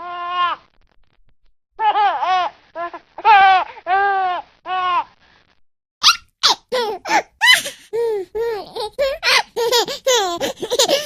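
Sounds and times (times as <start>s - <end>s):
child giggling and squealing: 6.0s - 11.0s.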